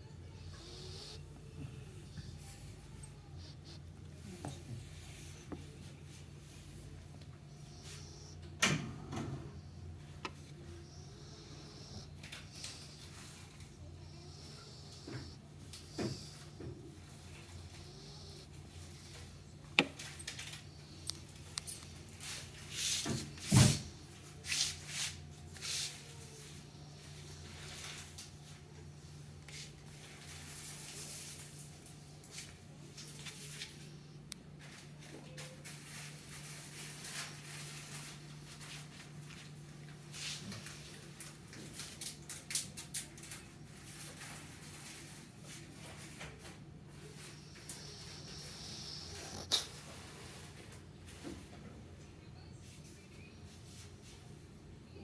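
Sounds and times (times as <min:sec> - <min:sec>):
steady low hum: 0:00.0 - 0:42.4
dog snoring and snuffling: 0:00.3 - 0:24.9, 0:46.9 - 0:50.6
dog breathing softly: 0:09.4 - 0:19.6, 0:46.9 - 0:50.6
small clicks and rustles: 0:29.4 - 0:51.7.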